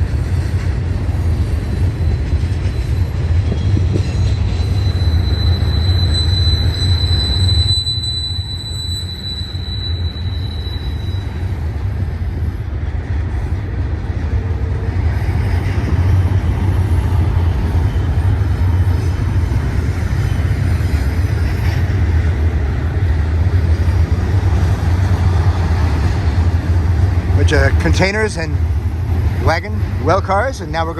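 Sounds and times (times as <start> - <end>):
freight train wheels rumbling: 0.0 - 30.9
high wheel squeal: 1.7 - 11.9.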